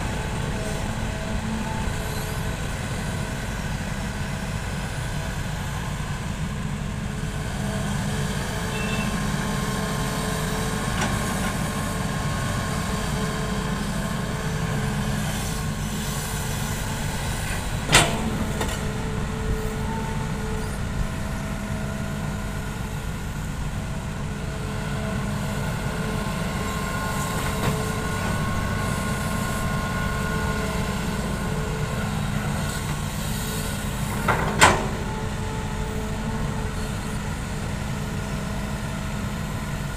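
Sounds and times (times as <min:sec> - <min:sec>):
excavator diesel engine whining: 0:00.0 - 0:39.9
metal clanks and knocks: 0:17.8 - 0:18.9, 0:34.1 - 0:35.2.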